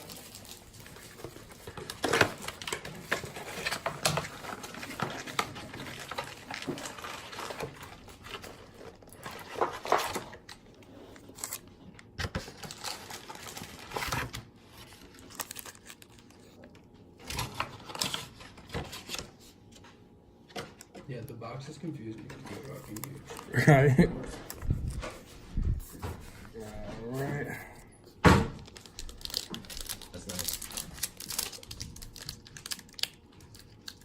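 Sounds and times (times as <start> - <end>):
plastic wrapping crinkling and tearing: 0.0 - 19.4, 22.4 - 27.5, 28.5 - 34.0.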